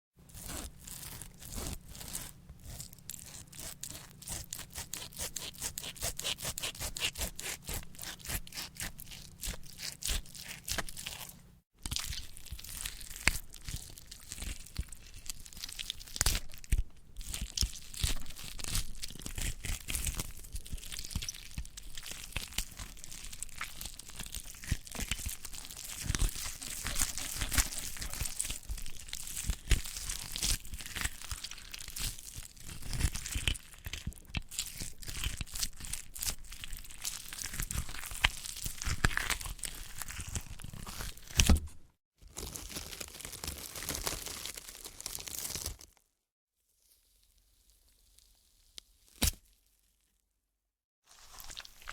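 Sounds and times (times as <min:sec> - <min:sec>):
flesh tearing and crunching: 0:00.3 - 0:46.0, 0:49.0 - 0:49.5, 0:51.1 - 0:51.9.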